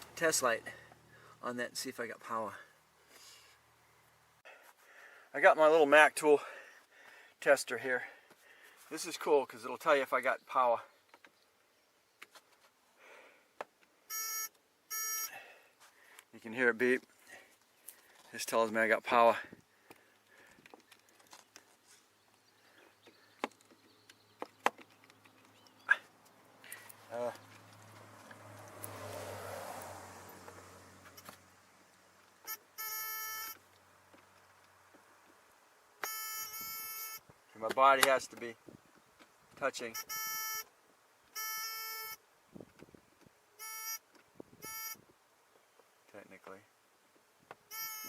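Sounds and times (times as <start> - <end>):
circuit tester beeping: 14.1 - 15.3, 32.5 - 33.6, 36.0 - 37.2, 39.9 - 40.7, 41.4 - 42.2, 43.6 - 44.0, 44.6 - 45.0, 47.7 - 48.0
clicks and taps of wiring handled: 19.9 - 21.7, 23.4 - 28.0.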